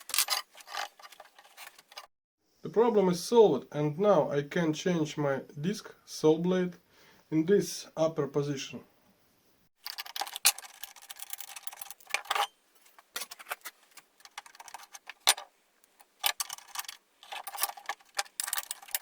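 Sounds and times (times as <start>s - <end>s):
rapid metallic clicking and rattling: 9.8s - 19.0s.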